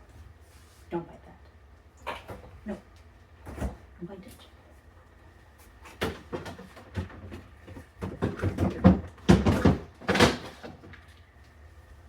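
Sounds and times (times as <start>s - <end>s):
kitchen knocks and bumps: 8.0s - 10.6s.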